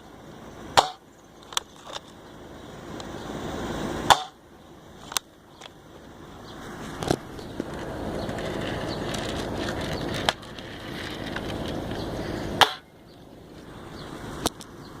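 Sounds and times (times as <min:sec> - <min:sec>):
rushing noise: 0:00.0 - 0:15.0
bb gun shots cracking: 0:00.8 - 0:01.0.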